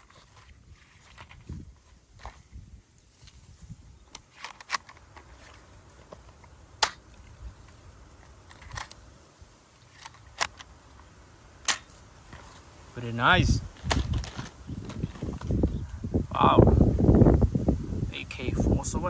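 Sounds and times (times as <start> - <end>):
plastic toy gun clicks and snaps: 10.0 - 10.7.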